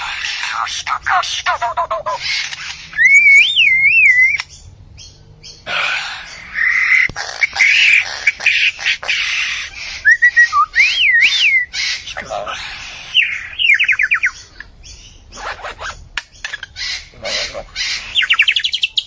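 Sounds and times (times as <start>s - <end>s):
harsh bird calls: 0.0s - 19.0s
bird warbling whistles: 2.2s - 4.5s, 6.2s - 12.1s, 13.0s - 14.4s.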